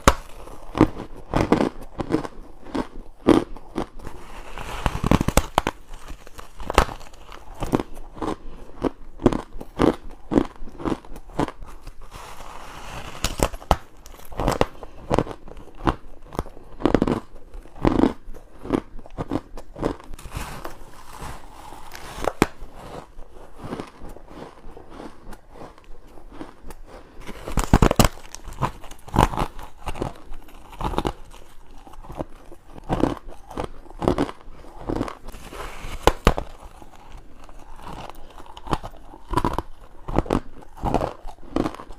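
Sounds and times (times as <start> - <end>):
crunching bites of ice: 0.0 - 41.9.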